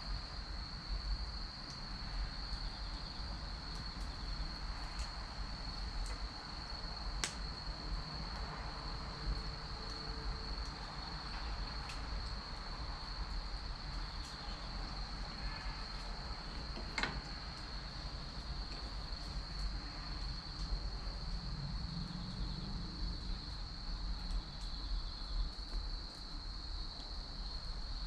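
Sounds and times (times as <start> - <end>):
high insect trill: 0.1 - 28.0
wood fire crackling and popping: 3.7 - 8.5.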